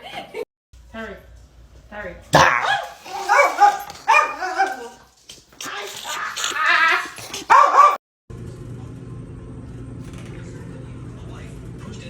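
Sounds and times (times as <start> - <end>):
dog barking: 2.4 - 5.0, 5.7 - 8.0.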